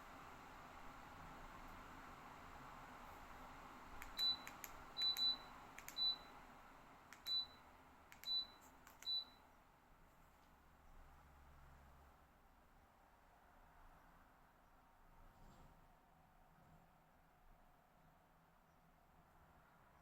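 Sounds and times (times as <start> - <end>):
fan airflow hiss: 0.0 - 20.0
fan control beeps: 4.0 - 6.4, 7.1 - 9.5.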